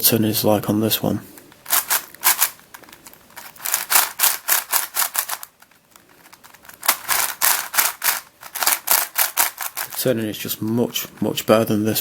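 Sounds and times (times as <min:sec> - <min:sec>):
plastic puzzle cube clicking: 0:01.6 - 0:10.0.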